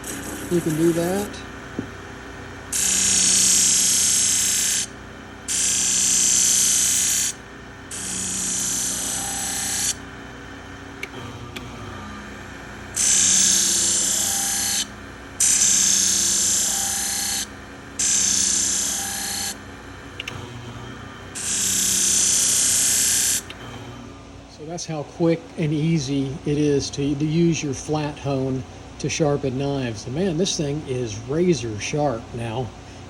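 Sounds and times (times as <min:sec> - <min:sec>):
motor humming: 0:00.0 - 0:24.5.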